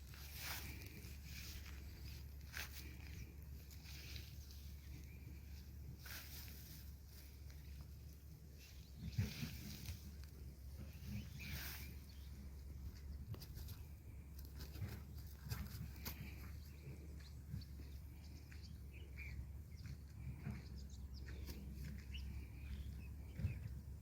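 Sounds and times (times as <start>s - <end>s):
steady low hum: 0.0s - 24.0s
bird chirps: 10.8s - 12.4s, 16.6s - 23.8s.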